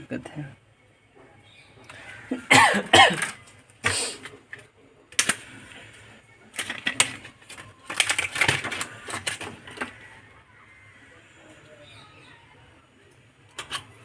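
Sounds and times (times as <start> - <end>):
plastic laptop parts clicking: 4.5 - 5.8, 6.5 - 10.0, 13.5 - 14.0.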